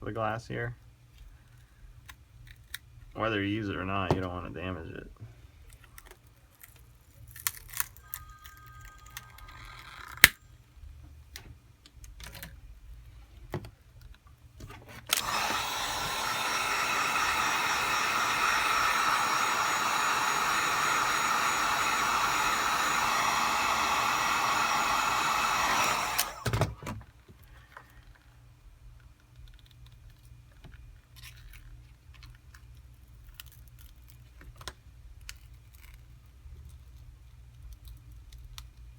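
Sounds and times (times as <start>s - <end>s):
electric hot-air blower: 15.1s - 26.8s.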